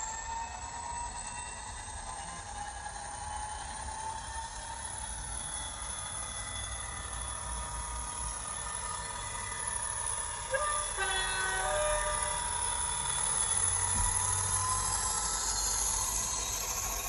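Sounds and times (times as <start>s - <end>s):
diesel engine running sound: 0.0s - 17.0s
two-tone horn through small speaker: 10.5s - 12.4s.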